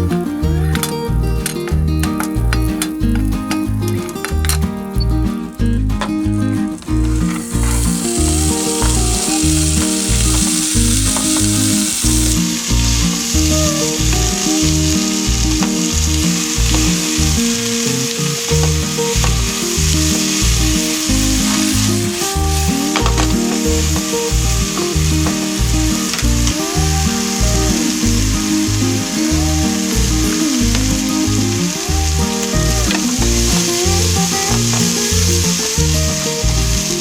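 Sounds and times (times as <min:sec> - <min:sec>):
spinach sizzling in a frying pan: 0:06.6 - 0:12.6, 0:19.0 - 0:26.1, 0:29.7 - 0:37.0.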